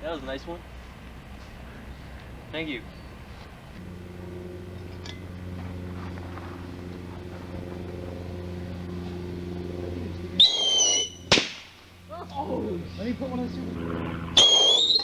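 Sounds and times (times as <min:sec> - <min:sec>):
low hum: 0:00.0 - 0:15.0
whistling firecracker: 0:10.4 - 0:11.7, 0:14.4 - 0:15.0
firecracker bang: 0:10.4 - 0:11.9.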